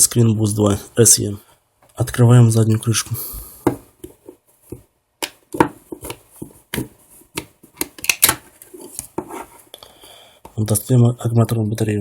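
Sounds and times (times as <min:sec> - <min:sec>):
plastic clicks and snaps: 0:07.4 - 0:08.4.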